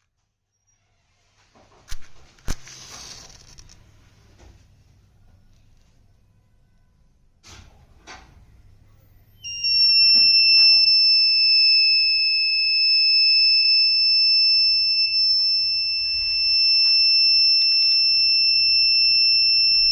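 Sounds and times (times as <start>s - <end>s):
high-pitched alarm buzzer: 9.4s - 19.9s.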